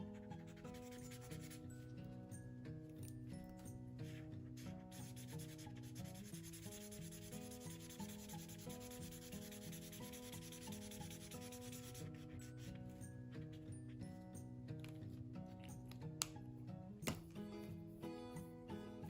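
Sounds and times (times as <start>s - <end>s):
colouring on paper: 0.0s - 1.9s, 4.0s - 14.2s
soft background music: 0.0s - 19.0s.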